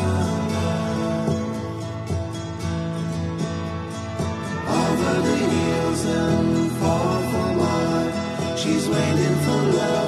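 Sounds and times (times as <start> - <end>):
acoustic guitar song: 0.0 - 10.0.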